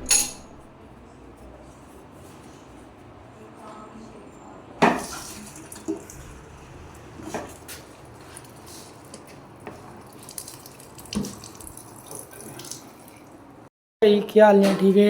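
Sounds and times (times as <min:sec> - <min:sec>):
hard objects knocking and clinking: 0:00.0 - 0:00.7.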